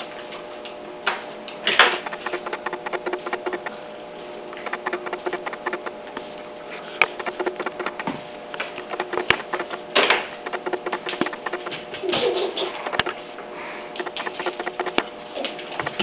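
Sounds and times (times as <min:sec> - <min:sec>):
short noisy burst: 0:07.1 - 0:08.2.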